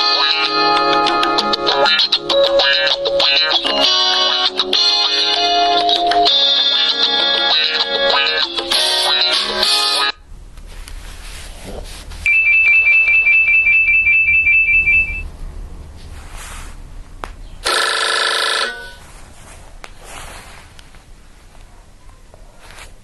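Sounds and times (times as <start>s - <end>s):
phone ringtone musical tone: 0.0s - 10.2s, 12.3s - 15.2s, 17.6s - 19.0s
pulsing electronic phone ring: 12.3s - 15.2s, 17.6s - 19.0s.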